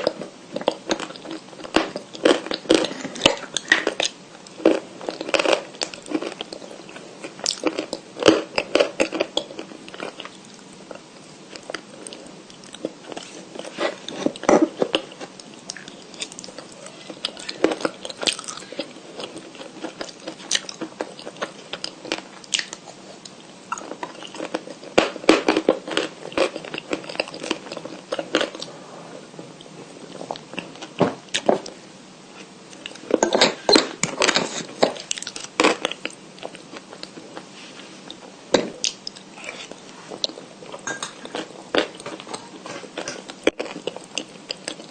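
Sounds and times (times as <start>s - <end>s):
chalk crunching while chewed: 0.0s - 28.7s.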